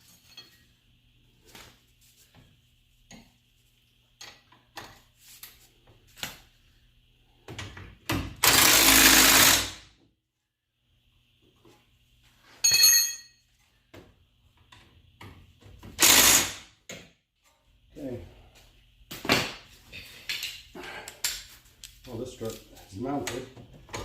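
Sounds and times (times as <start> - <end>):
tools and metal parts clinking: 0.0 - 0.7, 12.6 - 13.4
impact wrench burst: 8.4 - 9.9, 16.0 - 16.7.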